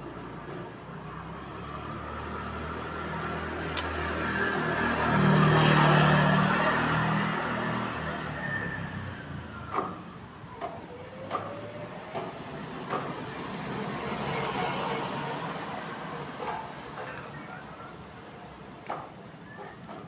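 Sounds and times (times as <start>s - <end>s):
motor vehicle passing by: 1.2s - 17.0s.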